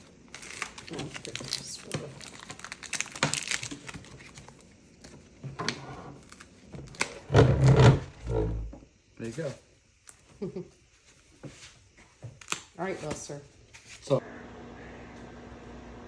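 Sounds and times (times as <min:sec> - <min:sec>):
plastic packaging handled: 0:00.0 - 0:05.3.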